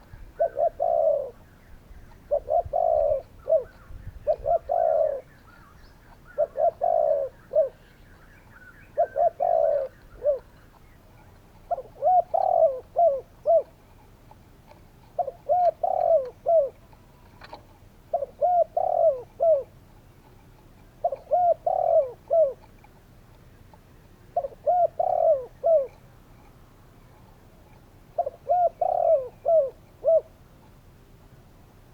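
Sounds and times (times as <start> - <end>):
dove cooing: 0.0 - 19.9, 20.9 - 22.8, 24.3 - 26.1, 28.1 - 30.4.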